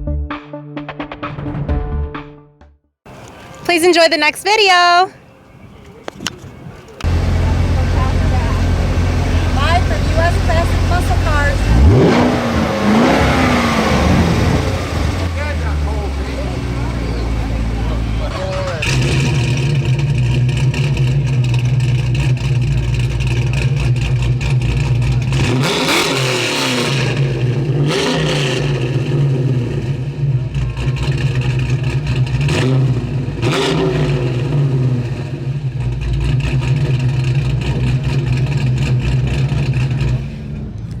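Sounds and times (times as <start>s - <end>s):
car engine revving: 5.6s - 41.0s.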